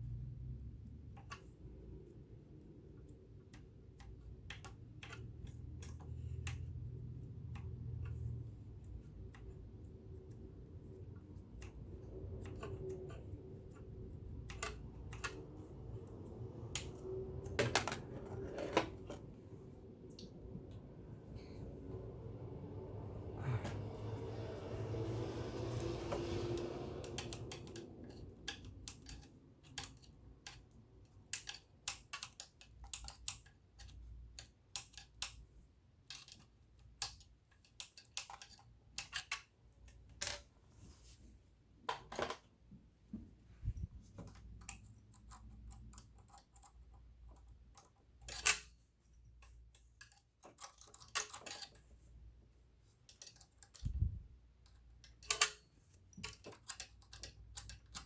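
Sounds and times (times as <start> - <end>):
light clicks and taps of metal: 54.6 - 58.0.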